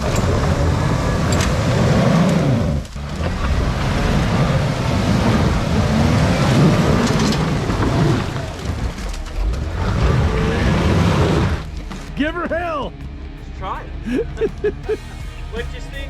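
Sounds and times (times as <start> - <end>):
engine revving under load: 0.0 - 11.8
tires rumbling over rocks: 0.0 - 16.0.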